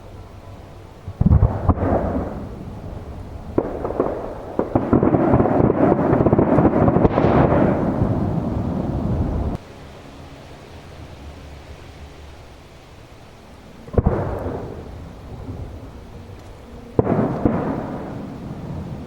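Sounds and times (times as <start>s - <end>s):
fireworks bursting and crackling: 1.1s - 9.6s, 13.8s - 19.0s.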